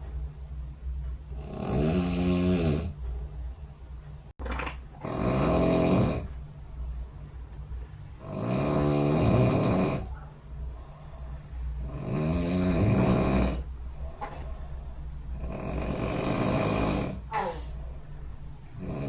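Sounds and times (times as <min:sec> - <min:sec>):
person snoring: 0:01.4 - 0:02.9, 0:05.0 - 0:06.3, 0:08.2 - 0:10.1, 0:11.8 - 0:13.7, 0:15.3 - 0:17.8, 0:18.8 - 0:19.0
quiet breathing: 0:09.5 - 0:12.0, 0:12.8 - 0:19.0.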